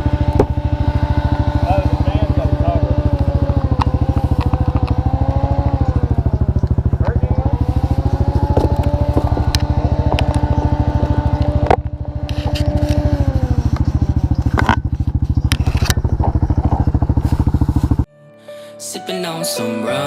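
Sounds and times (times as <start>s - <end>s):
vehicle engine idling: 0.0s - 18.1s
knocks and clatter: 8.0s - 18.0s.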